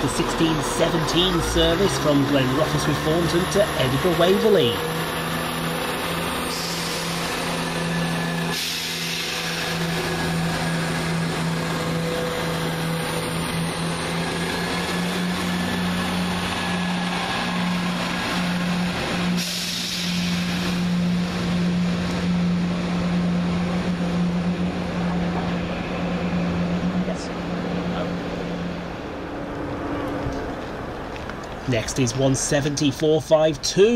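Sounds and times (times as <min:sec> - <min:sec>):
train diesel engines humming: 0:00.0 - 0:33.9
air brake hisses: 0:06.4 - 0:07.4, 0:08.3 - 0:10.0, 0:19.3 - 0:20.9.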